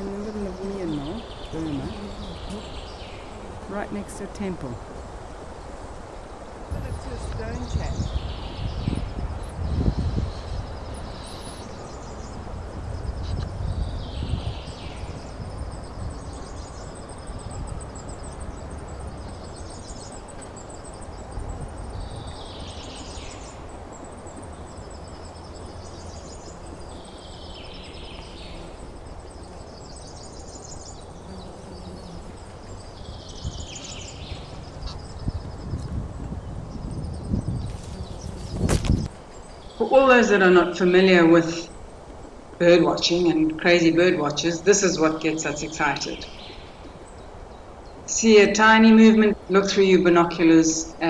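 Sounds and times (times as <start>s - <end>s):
birds calling: 0.0s - 4.9s, 22.3s - 49.6s.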